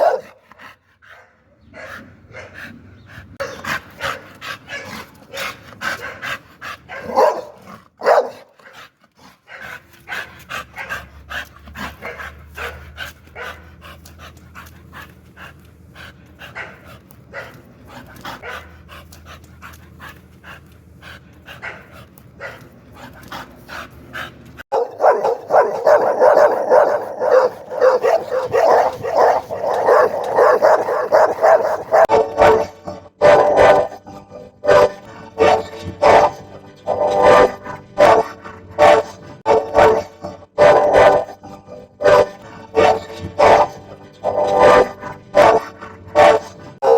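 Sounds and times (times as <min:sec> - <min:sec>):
dog barking angrily: 0:00.0 - 0:00.4, 0:01.1 - 0:02.7, 0:03.4 - 0:08.8, 0:09.5 - 0:13.8, 0:16.4 - 0:17.7, 0:18.3 - 0:18.9, 0:21.5 - 0:22.8, 0:24.7 - 0:34.0, 0:34.7 - 0:41.4, 0:42.0 - 0:46.9.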